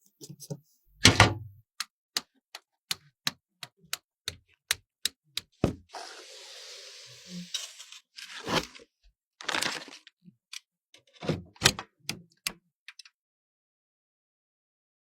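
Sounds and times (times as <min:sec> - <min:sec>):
hiss: 0:06.0 - 0:07.5.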